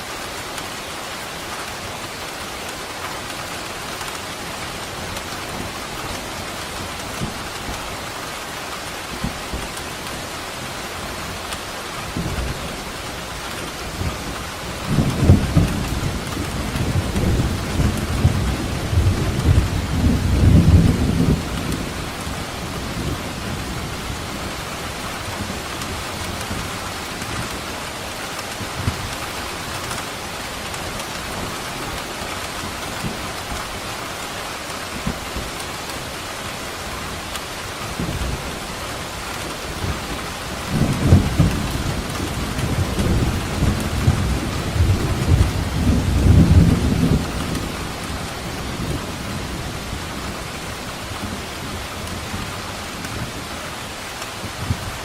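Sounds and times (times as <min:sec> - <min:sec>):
heavy rain: 0:00.0 - 0:55.0
thunder rumbling: 0:13.8 - 0:29.7, 0:37.3 - 0:53.5.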